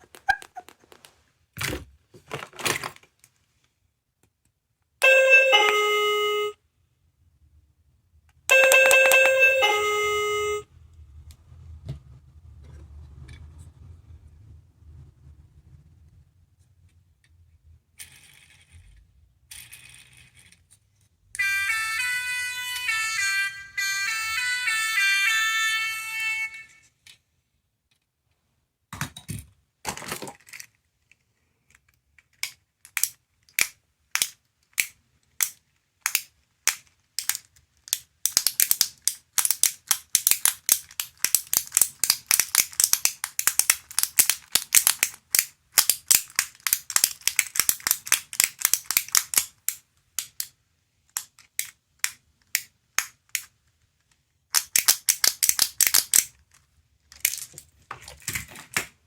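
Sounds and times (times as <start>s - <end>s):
capsule toy clicking: 32.2s - 53.6s, 54.5s - 57.6s.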